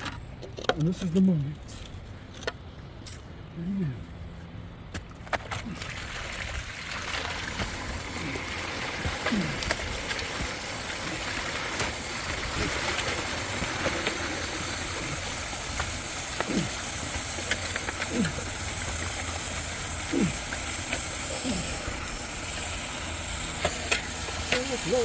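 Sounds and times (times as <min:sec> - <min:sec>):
water rushing from leaking pipe: 0:05.5 - 0:25.0.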